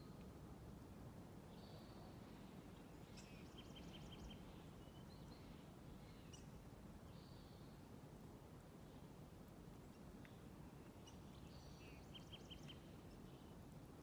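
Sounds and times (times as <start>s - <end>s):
songbird chirping: 1.5s - 7.8s, 9.9s - 13.7s.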